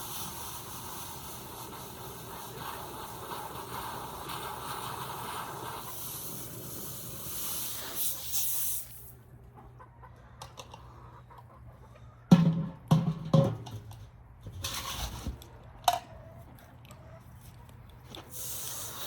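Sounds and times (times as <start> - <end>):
steady hiss: 0.0 - 9.1, 18.2 - 19.0
chickens clucking: 9.3 - 14.0, 14.6 - 18.3.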